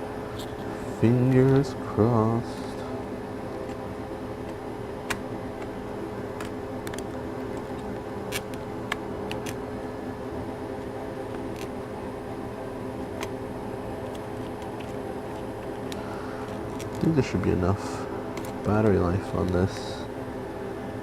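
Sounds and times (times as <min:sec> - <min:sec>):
fan humming: 0:00.0 - 0:21.0
small parts clicking: 0:14.0 - 0:17.1.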